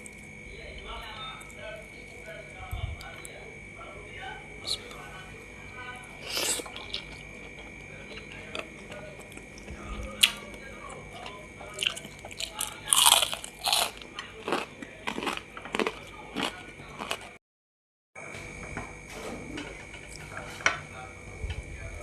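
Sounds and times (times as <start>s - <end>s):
faint high whine: 0.0s - 14.4s
person chewing crunchy food: 6.1s - 17.4s.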